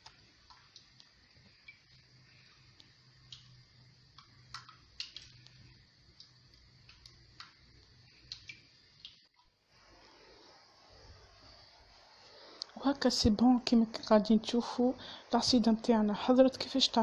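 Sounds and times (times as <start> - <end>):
porridge bubbles popping: 0.0 - 9.6
low steady hum: 0.0 - 17.0.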